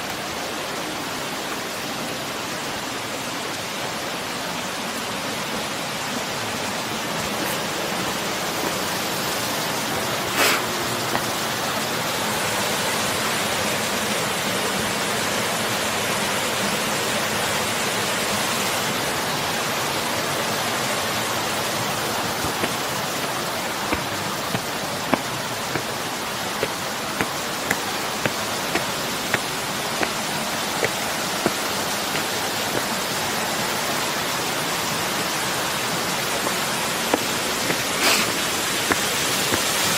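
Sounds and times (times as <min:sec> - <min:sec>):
rushing water: 0:00.0 - 0:39.9
footsteps ticking: 0:11.0 - 0:11.4, 0:22.4 - 0:33.1, 0:36.4 - 0:39.9.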